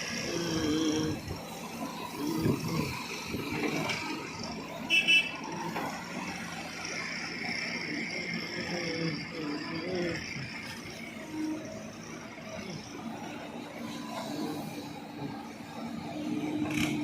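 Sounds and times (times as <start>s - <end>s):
tractor engines running: 0.0s - 17.0s.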